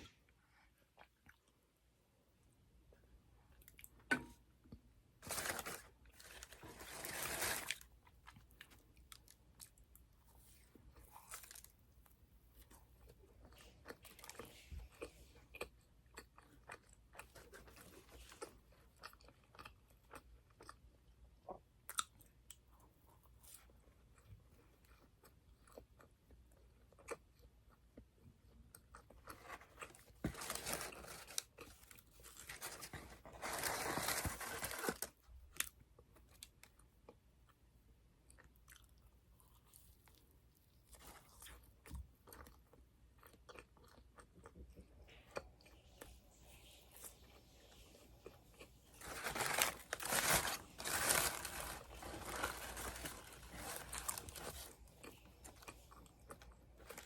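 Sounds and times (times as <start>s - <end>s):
person chewing: 38.2s - 40.4s, 41.0s - 46.1s, 48.2s - 57.0s.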